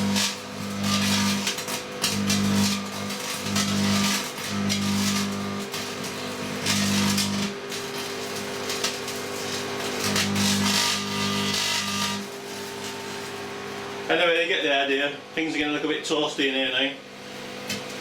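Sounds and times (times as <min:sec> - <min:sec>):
loud transformer hum: 0:00.0 - 0:18.0
hissing crackle: 0:00.4 - 0:13.5.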